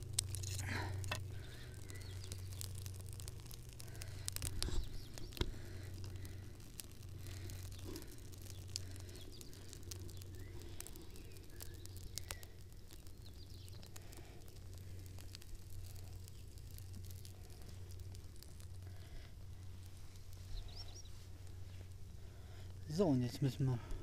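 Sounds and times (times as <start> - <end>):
campfire crackling and popping: 0.0 - 24.0
steady low hum: 0.0 - 24.0.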